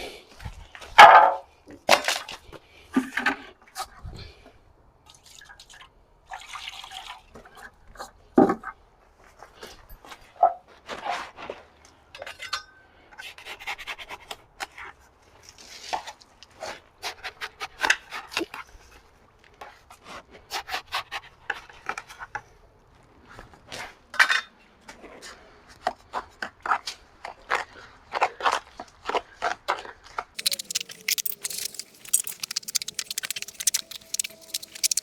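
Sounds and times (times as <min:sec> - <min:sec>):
hand tool scraping stucco: 0:30.4 - 0:35.0.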